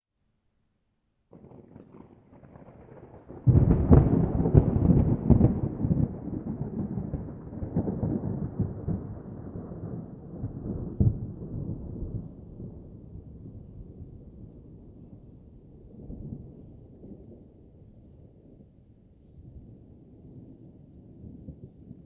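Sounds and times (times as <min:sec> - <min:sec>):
crackling thunder peal: 0:01.3 - 0:18.8
distant rolling thunder: 0:01.3 - 0:22.0.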